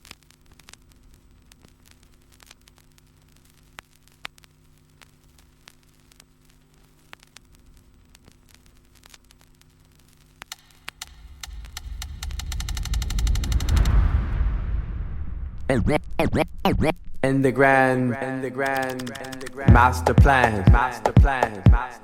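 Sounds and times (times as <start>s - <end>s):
vinyl record crackle and hiss: 0.0s - 14.2s, 15.7s - 22.0s
music: 10.5s - 14.7s, 18.6s - 22.0s.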